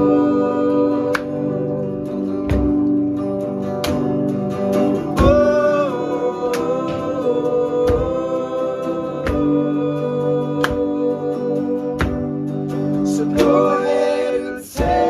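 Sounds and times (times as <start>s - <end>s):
indie rock band playing live: 0.0s - 13.8s
drum hits: 2.4s - 3.0s, 5.2s - 5.7s, 7.9s - 8.4s, 14.8s - 15.0s.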